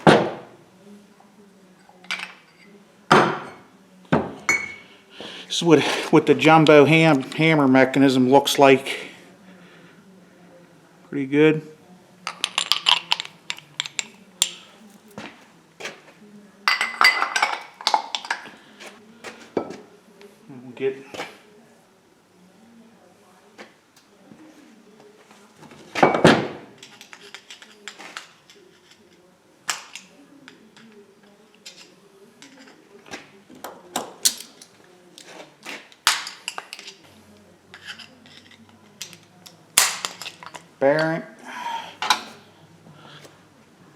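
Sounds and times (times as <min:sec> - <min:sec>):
steel parts clinking and rattling: 0:12.3 - 0:15.1, 0:26.8 - 0:29.1, 0:34.2 - 0:37.0
metal parts clinking and clanking: 0:34.2 - 0:34.8.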